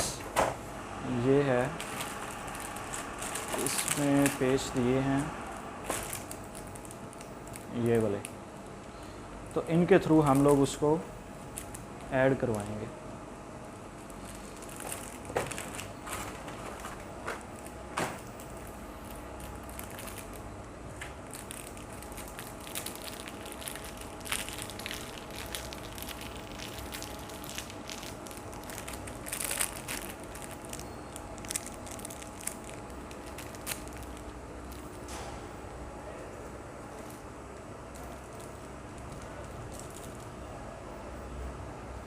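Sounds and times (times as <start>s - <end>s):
faint steady hum: 0.0s - 42.0s.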